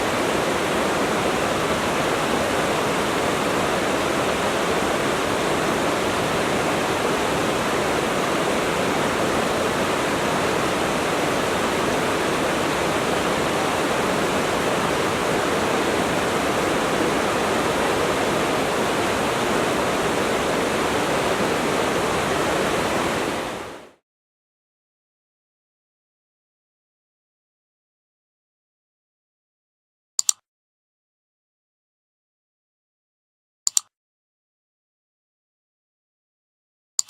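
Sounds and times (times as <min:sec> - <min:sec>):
water stream flowing: 0:00.0 - 0:24.0.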